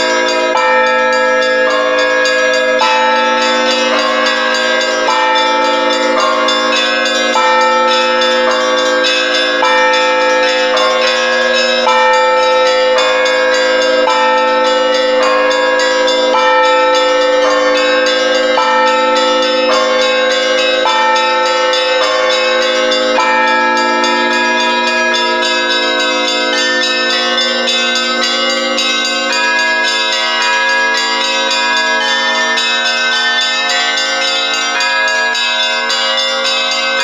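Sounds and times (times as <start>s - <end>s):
church bells ringing: 0.0s - 37.0s.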